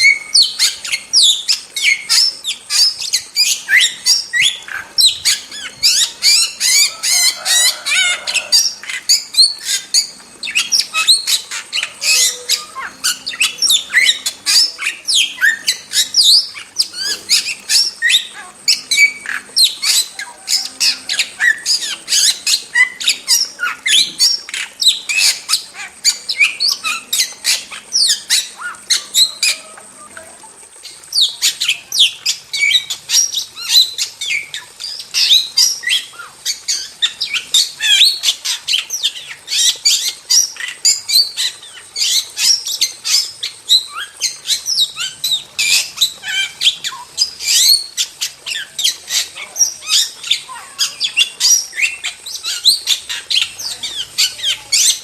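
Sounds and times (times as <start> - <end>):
starling chattering: 0.0 - 33.2.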